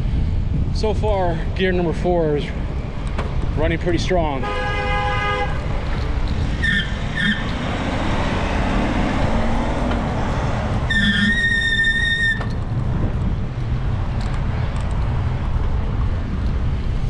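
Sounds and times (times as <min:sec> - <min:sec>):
traffic noise: 0:00.0 - 0:17.0
wind rumbling on microphone: 0:00.0 - 0:17.0
high-pitched squeal: 0:06.4 - 0:09.6, 0:10.4 - 0:12.6.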